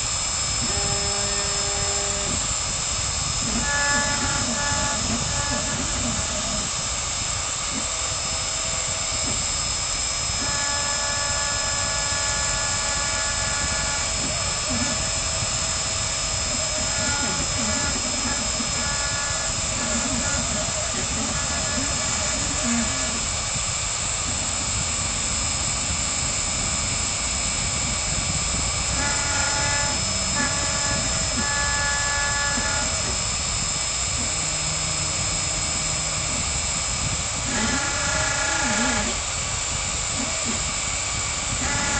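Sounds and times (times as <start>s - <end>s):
router spindle whining: 0.0s - 41.9s
steady tones: 0.0s - 41.9s.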